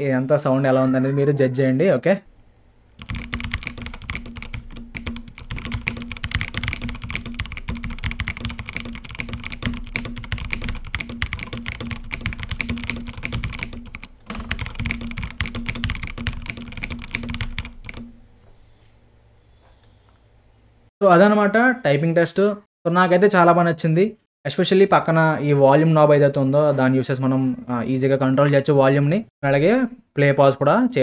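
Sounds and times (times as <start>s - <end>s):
mechanical keyboard typing: 3.0s - 18.2s.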